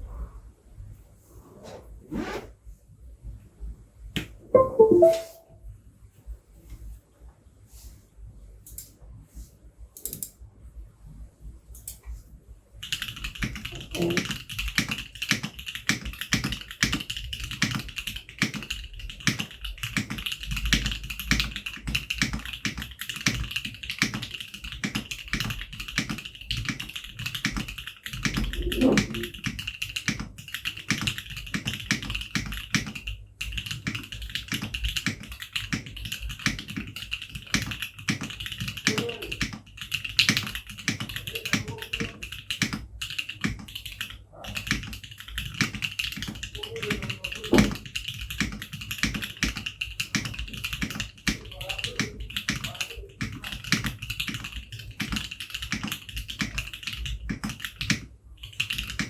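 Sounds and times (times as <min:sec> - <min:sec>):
fast typing on mechanical keyboard: 0:12.8 - 0:59.0.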